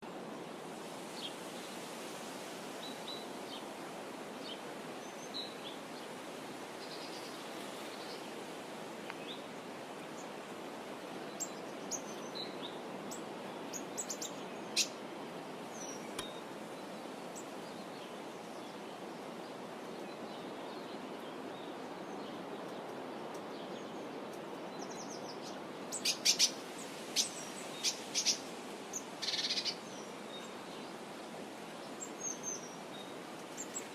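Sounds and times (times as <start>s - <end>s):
steady background hiss: 0.0s - 33.9s
small birds chirping: 11.3s - 15.0s, 15.7s - 30.9s, 31.8s - 33.9s
sharp bird calls: 29.2s - 29.8s.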